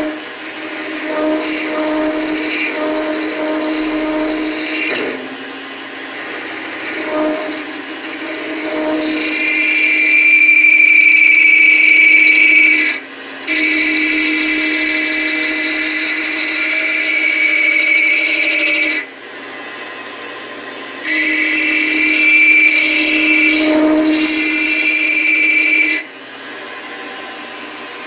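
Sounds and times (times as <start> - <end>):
lathe tool squealing on metal: 21.3 - 25.3.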